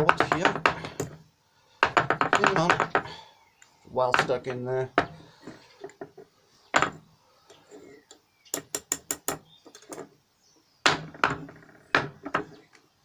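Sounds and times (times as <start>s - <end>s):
metal mould clanking and knocking: 1.8s - 3.2s, 6.8s - 7.0s, 10.9s - 12.6s.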